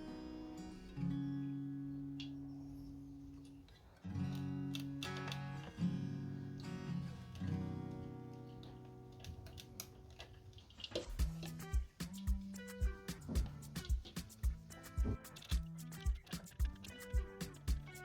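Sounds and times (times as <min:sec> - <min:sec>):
strummed guitar chords: 0:11.2 - 0:18.0.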